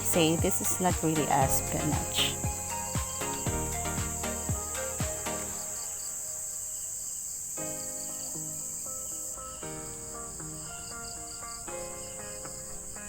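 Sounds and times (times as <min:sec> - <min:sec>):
crickets droning: 0:00.0 - 0:13.0
gentle melodic background music: 0:00.0 - 0:13.0.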